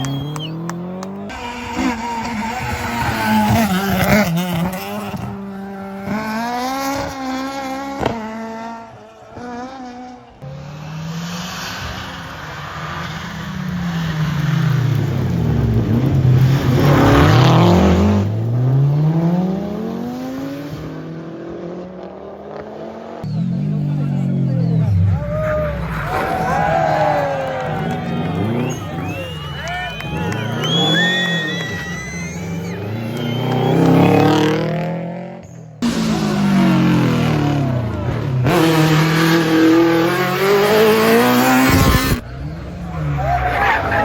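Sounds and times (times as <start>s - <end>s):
car passing by: 0.0s - 22.1s
rally car engine revving: 0.0s - 44.0s.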